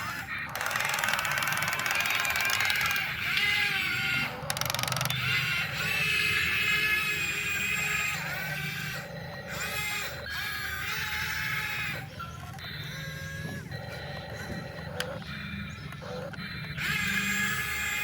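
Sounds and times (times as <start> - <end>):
toy electric motors whining: 0.0 - 18.0.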